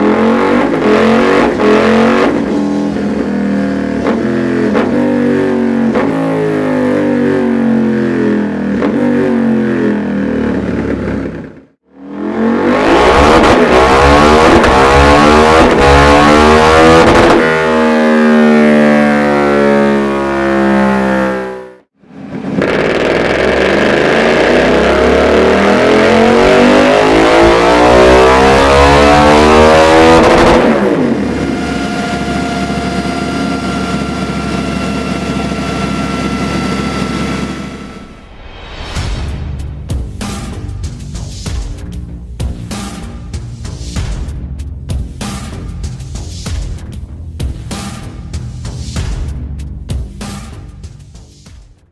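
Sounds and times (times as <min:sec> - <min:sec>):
motorcycle engine revving on a dyno: 0:00.0 - 0:38.2.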